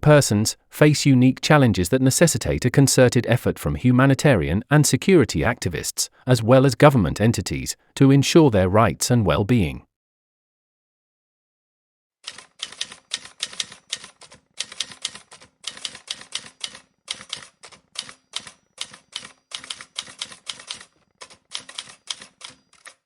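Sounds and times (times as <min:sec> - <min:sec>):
typewriter keys clacking: 0:12.2 - 0:23.0.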